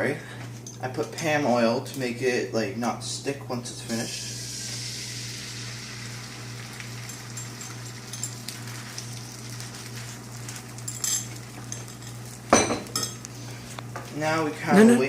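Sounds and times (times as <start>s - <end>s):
low steady hum: 0.0s - 15.0s
eggs sizzling in a frying pan: 3.9s - 14.4s.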